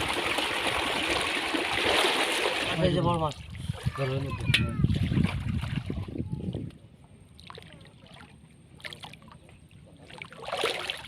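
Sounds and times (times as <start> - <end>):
water sloshing and splashing: 0.0 - 11.0.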